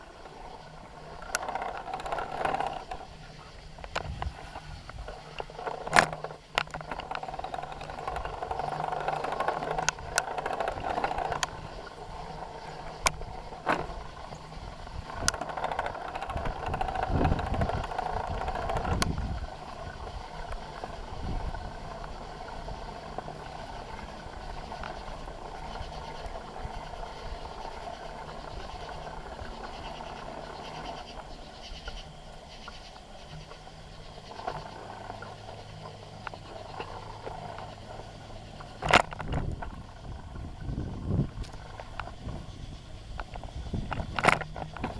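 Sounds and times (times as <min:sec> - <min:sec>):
bicycle frame rattling: 0:00.0 - 0:31.5
bicycle tyres rolling: 0:00.0 - 0:44.9
deep rumble: 0:00.0 - 0:44.9.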